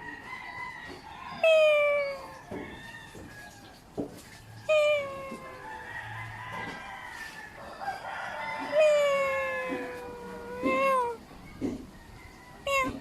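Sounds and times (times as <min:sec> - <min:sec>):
cat meowing: 0:01.4 - 0:02.4, 0:04.7 - 0:05.6, 0:08.7 - 0:11.2, 0:12.7 - 0:13.0.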